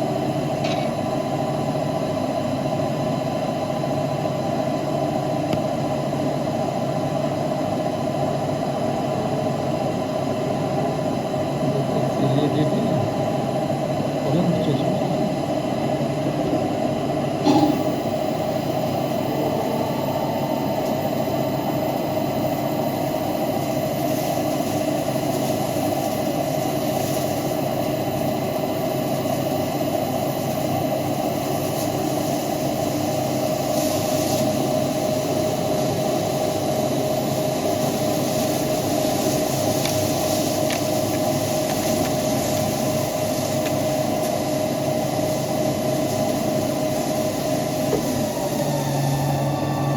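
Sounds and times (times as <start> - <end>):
lathe humming with held tone: 0.0 - 49.9
brief sharp sound: 17.4 - 18.1.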